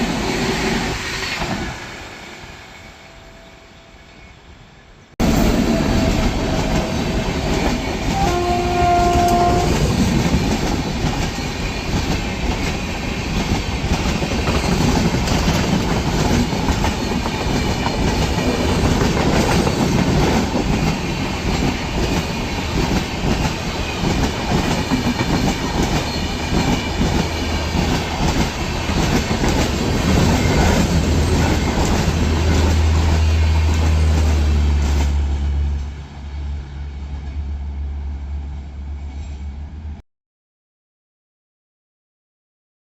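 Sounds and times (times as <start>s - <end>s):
train wheels clattering on rails: 5.2s - 36.0s
train horn: 5.4s - 10.0s.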